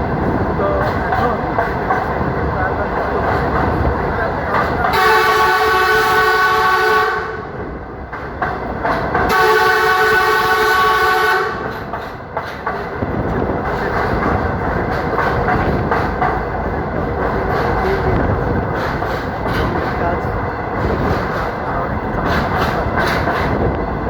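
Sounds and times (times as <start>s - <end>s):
train wheels rumbling on rails: 0.0s - 24.0s
train horn blasts: 4.9s - 7.6s, 9.3s - 11.7s.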